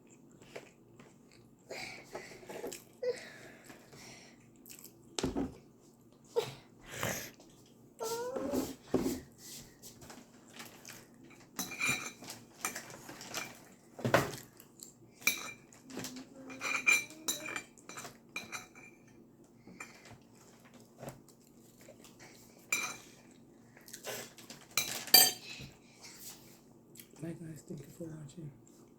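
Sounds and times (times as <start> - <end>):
cutlery clinking on plates: 11.3 - 14.4, 16.5 - 19.1, 22.6 - 23.1, 24.8 - 25.7.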